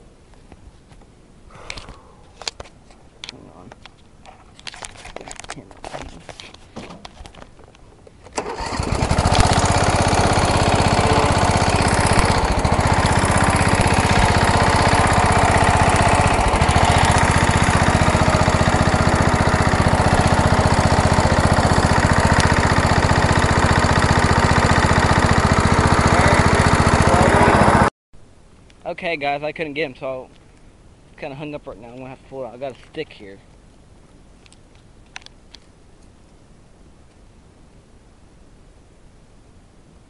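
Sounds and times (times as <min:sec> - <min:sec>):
small lawnmower engine running: 0:08.4 - 0:27.9.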